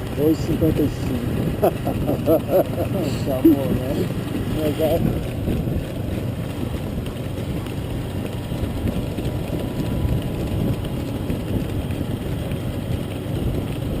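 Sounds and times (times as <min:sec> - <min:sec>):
motorcycle engine running: 0:00.0 - 0:14.0
wind rumble on microphone: 0:00.0 - 0:14.0.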